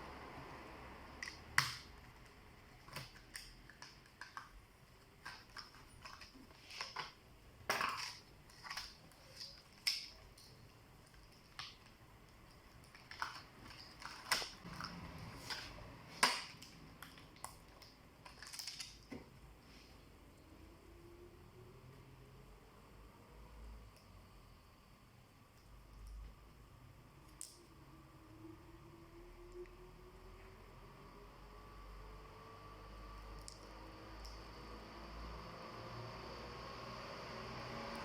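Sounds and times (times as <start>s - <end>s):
small clicks and snaps: 1.2s - 19.2s, 27.2s - 27.8s, 33.4s - 34.5s.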